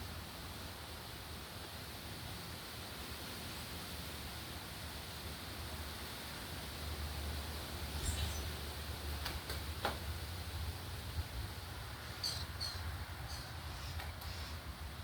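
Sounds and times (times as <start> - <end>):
birds chirping: 7.9 - 8.6, 12.0 - 14.6.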